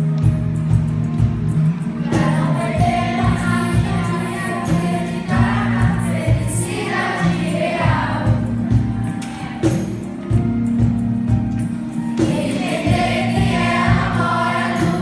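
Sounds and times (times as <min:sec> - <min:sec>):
instrumental music with beat: 0:00.0 - 0:15.0
choir singing: 0:02.1 - 0:08.6, 0:12.2 - 0:15.0.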